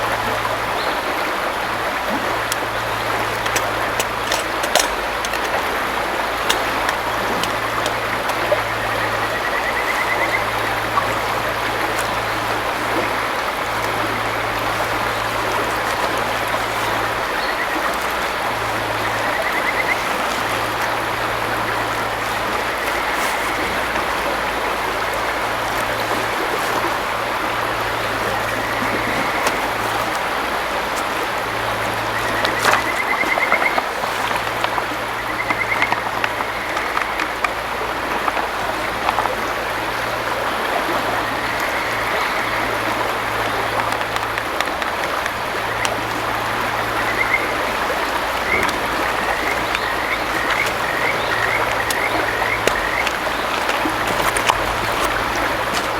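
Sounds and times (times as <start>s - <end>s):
river water rushing over stones: 0.0s - 55.9s.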